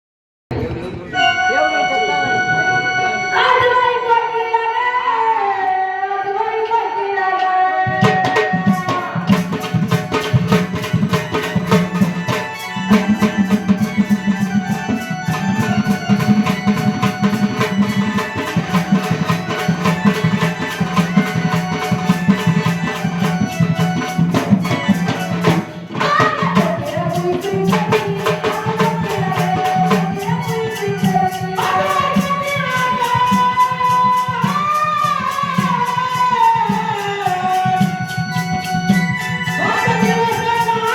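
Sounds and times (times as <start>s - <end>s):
sustained melodic instrument: 1.1s - 4.8s, 9.7s - 26.0s
woman singing: 3.3s - 9.3s, 26.0s - 38.5s, 39.3s - 40.9s
hand drum fast rhythm: 8.0s - 40.9s.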